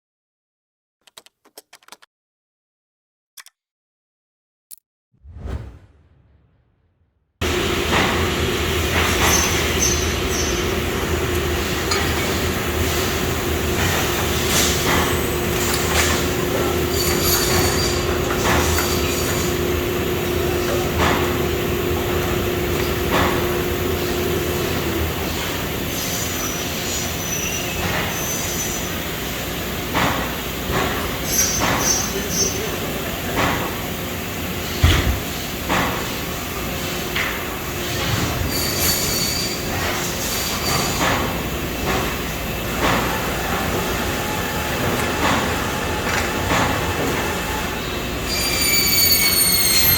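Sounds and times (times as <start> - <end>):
clanks and clicks: 8.8 - 19.6.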